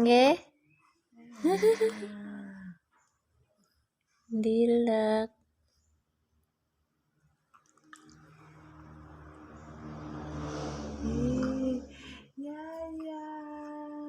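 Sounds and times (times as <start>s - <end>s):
wavering vocal whine: 8.4s - 12.3s
person humming: 10.9s - 12.2s.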